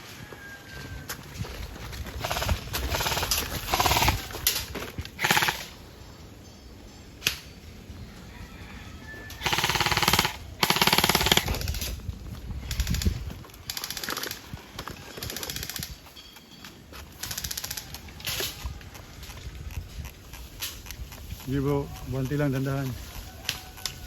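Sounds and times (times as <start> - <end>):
airsoft guns firing bursts: 2.2 - 5.8, 9.4 - 11.8.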